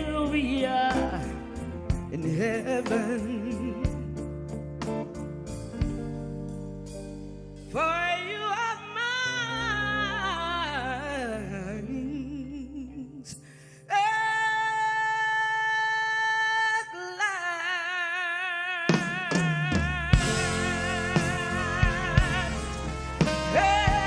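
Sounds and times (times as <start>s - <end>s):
woman singing without words: 0.0s - 4.3s, 7.7s - 24.0s
band holding a chord: 20.2s - 24.0s.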